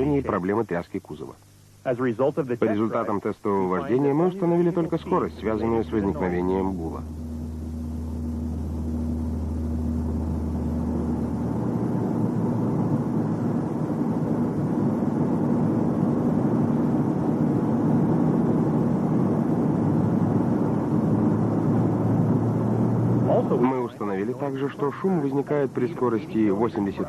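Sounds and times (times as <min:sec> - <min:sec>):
strong low hum: 0:00.0 - 0:27.0
car road and engine noise: 0:07.2 - 0:25.4.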